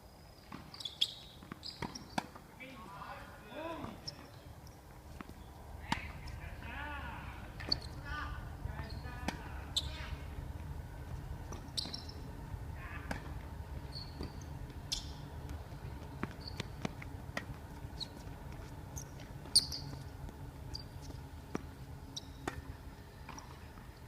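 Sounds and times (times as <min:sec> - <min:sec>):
steady low hum: 0:00.0 - 0:24.0
shoes squeaking on court: 0:00.4 - 0:02.4, 0:03.8 - 0:06.4, 0:07.5 - 0:08.1, 0:08.8 - 0:10.1, 0:11.5 - 0:12.3, 0:13.1 - 0:23.6.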